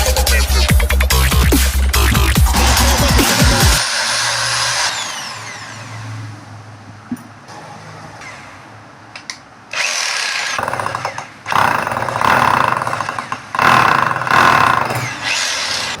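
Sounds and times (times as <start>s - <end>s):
rotary hammer whining and rattling: 9.2s - 16.0s.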